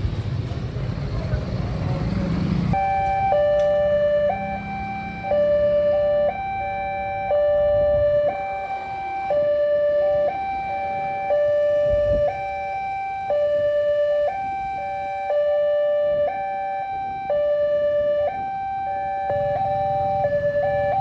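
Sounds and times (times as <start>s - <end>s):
two-tone crossing warning alarm: 2.4s - 21.0s.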